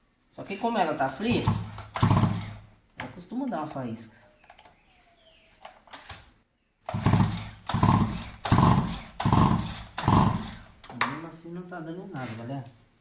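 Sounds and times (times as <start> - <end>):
chainsaw recoil starter pulls: 1.2 - 2.6, 6.9 - 10.7.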